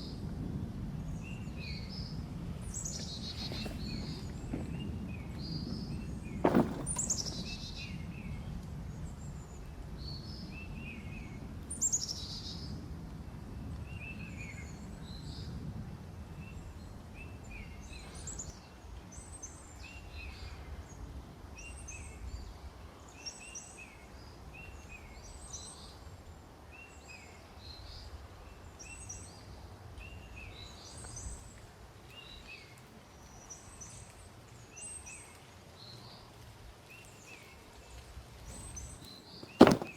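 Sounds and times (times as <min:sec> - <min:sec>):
songbirds chirping: 0:01.0 - 0:12.6, 0:29.0 - 0:39.9.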